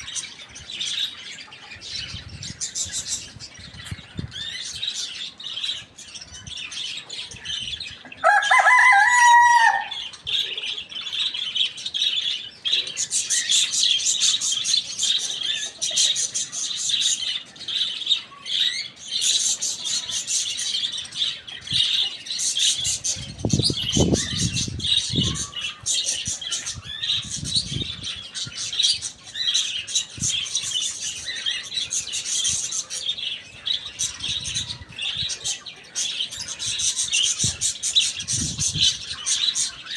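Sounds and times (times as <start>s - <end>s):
small birds chirping: 0.0s - 8.7s, 9.3s - 39.9s
rooster crowing: 8.2s - 10.0s.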